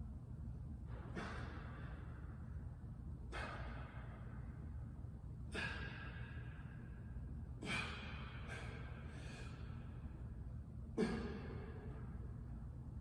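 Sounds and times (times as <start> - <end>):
forceful exhalations of exertion: 5.5 - 6.6.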